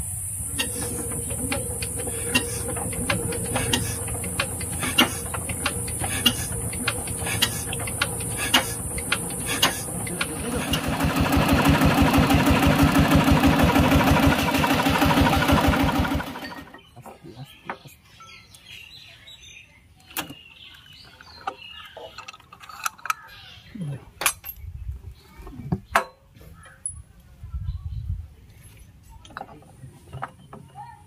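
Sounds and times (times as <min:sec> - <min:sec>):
diesel engine running: 0:00.0 - 0:16.7.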